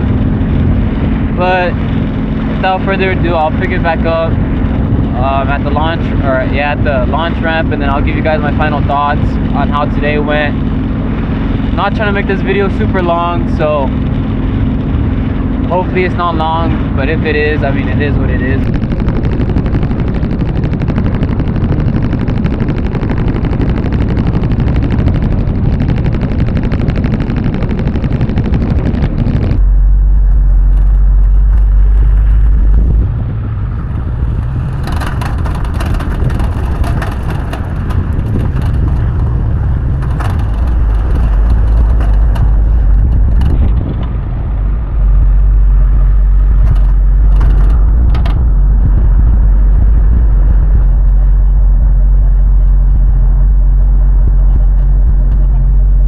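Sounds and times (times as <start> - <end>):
deep rumbling wind roar: 0.0 - 56.0
jet ski engine: 0.0 - 56.0
wind buffeting microphone: 0.0 - 56.0.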